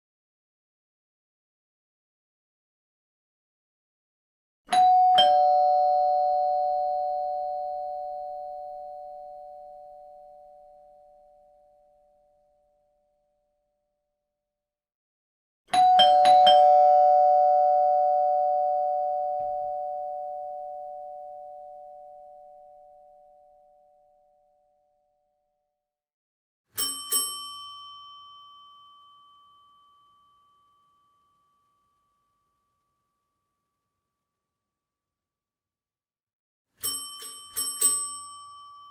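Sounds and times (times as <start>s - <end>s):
doorbell ding-dong chime: 4.7s - 12.2s, 15.7s - 24.1s, 26.8s - 32.6s, 36.8s - 38.9s.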